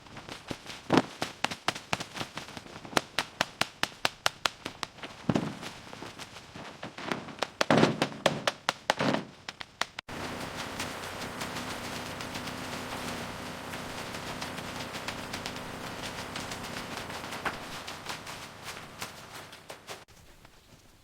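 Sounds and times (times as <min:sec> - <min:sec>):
sharp cracks and knocks: 0:00.1 - 0:20.6
steady hiss: 0:09.9 - 0:21.0.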